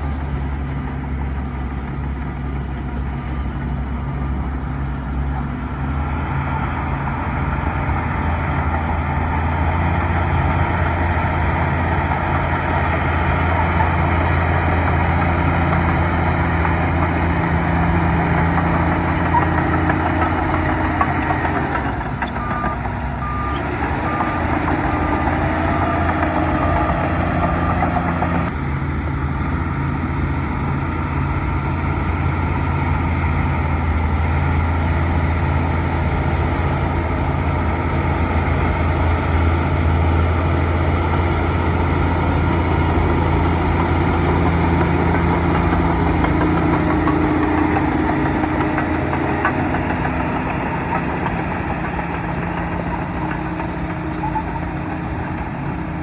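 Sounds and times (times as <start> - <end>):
bulldozer diesel engine running: 0.0 - 56.0
reversing alarm beeping: 18.3 - 28.5.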